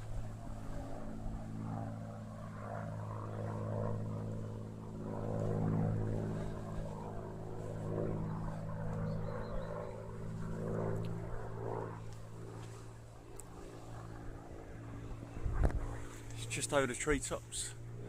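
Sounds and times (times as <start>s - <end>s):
propeller plane engine droning: 0.0s - 18.0s.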